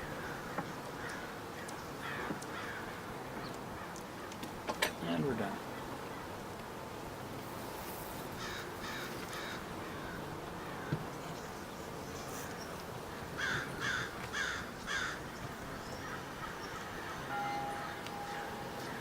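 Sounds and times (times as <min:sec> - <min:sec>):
bird harsh calls: 0:12.2 - 0:19.0.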